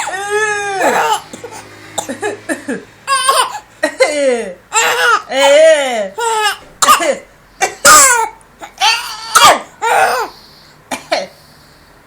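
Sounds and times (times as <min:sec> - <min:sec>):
baby coughing: 0:00.0 - 0:02.4, 0:03.1 - 0:05.6, 0:06.2 - 0:11.4
baby squealing: 0:03.1 - 0:03.6, 0:04.7 - 0:05.6, 0:06.2 - 0:06.6, 0:07.8 - 0:10.3.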